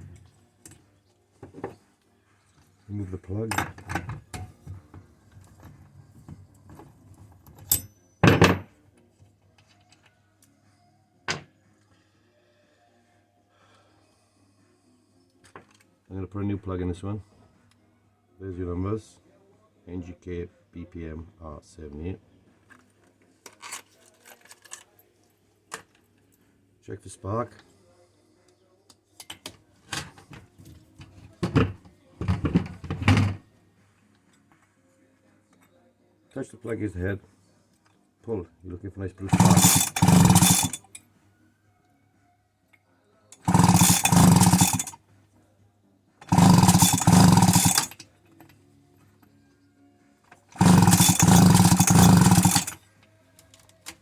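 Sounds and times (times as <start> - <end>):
hand tools knocking on engine: 39.3 - 40.8, 46.3 - 47.9, 50.6 - 52.8.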